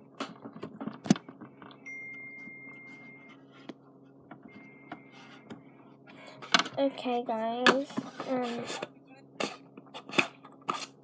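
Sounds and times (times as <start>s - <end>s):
low steady hum: 0.0s - 11.0s
faint high steady tone: 1.8s - 3.4s, 4.5s - 5.8s.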